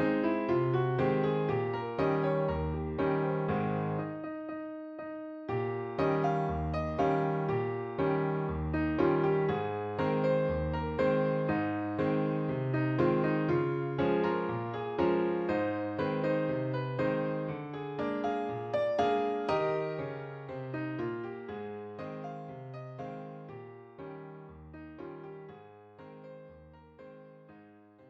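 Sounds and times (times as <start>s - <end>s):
piano-like keyboard melody: 0.0s - 28.0s.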